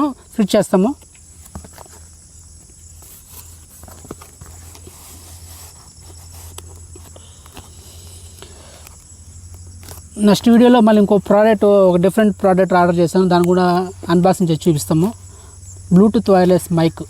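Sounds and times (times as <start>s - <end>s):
faint insect chirping: 0.0s - 17.0s
steady low hum: 0.0s - 17.0s.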